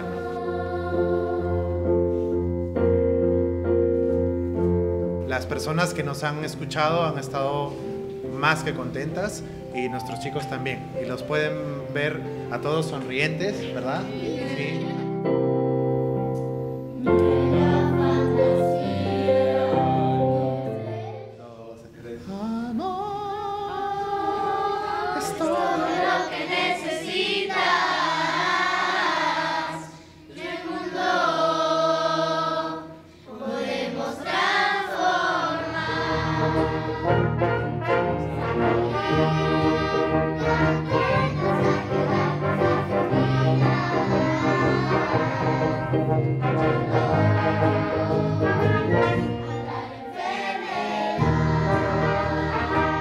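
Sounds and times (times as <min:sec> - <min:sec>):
choir singing: 0:00.0 - 0:03.4, 0:12.0 - 0:15.2, 0:16.9 - 0:21.8, 0:22.7 - 0:53.0
brass ensemble playing: 0:35.7 - 0:50.0, 0:50.8 - 0:53.0.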